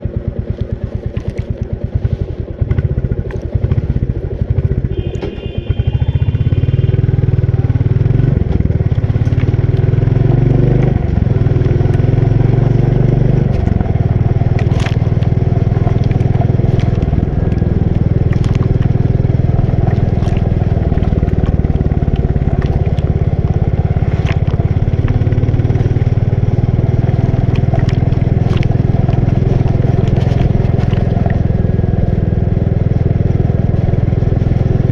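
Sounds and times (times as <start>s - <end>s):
light clatter over road: 0.0s - 5.6s, 6.9s - 34.9s
motorcycle engine running: 0.0s - 34.9s.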